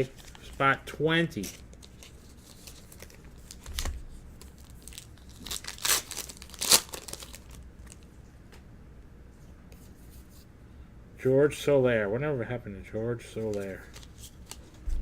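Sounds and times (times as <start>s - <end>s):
wrapper tearing and crinkling: 1.7s - 8.0s.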